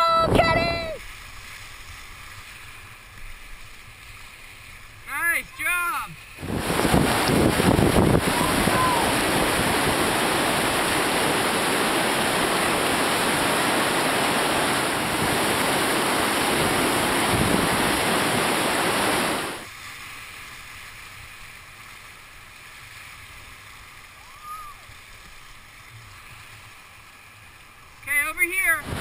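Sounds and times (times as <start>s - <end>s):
river rapids rushing: 4.8s - 19.7s, 28.1s - 29.0s.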